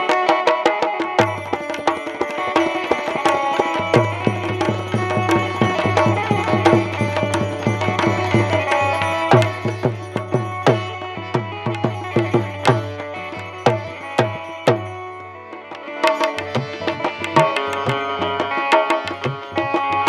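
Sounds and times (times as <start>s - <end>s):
fast hand drum rhythm: 0.0s - 13.0s
held melodic notes: 0.9s - 20.0s.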